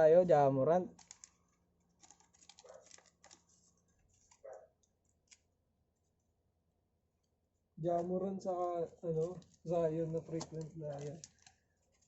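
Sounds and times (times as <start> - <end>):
trading cards clicking and rustling: 0.9 - 5.5, 7.8 - 12.0.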